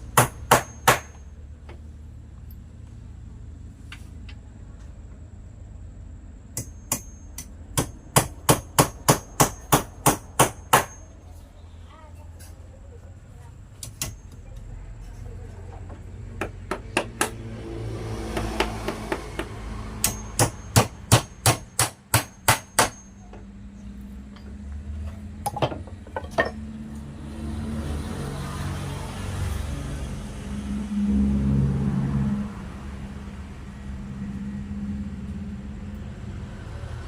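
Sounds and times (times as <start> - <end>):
hammer striking wood: 0.0 - 1.3, 6.6 - 11.1, 16.4 - 17.5, 18.2 - 23.2.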